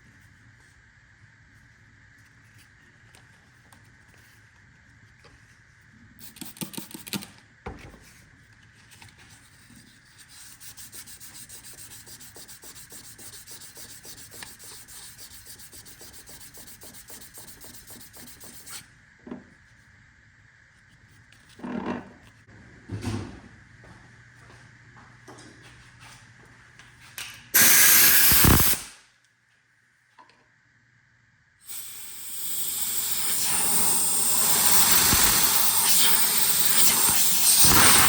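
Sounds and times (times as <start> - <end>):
sandpaper rubbing on metal: 10.2 - 18.8, 31.7 - 38.0.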